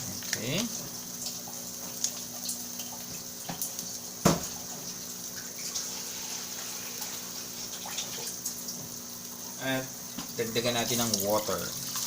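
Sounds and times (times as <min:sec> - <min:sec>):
rice sizzling in a pot: 0:03.1 - 0:11.9.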